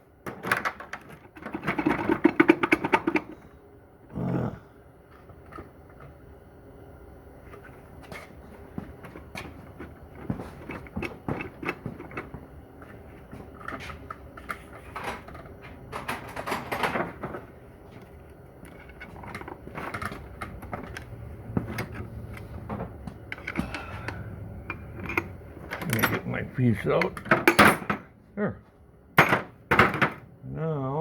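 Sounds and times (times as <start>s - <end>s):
low hum: 17.7s - 27.5s.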